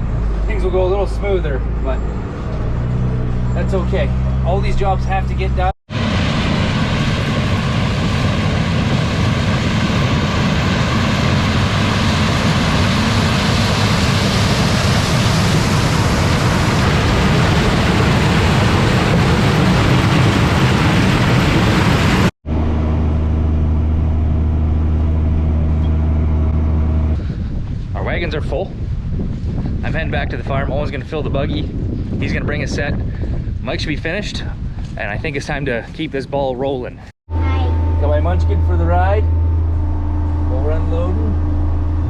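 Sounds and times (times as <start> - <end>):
deep engine drone: 0.0 - 28.0, 37.3 - 42.0
heavy farm machinery running: 37.3 - 42.0.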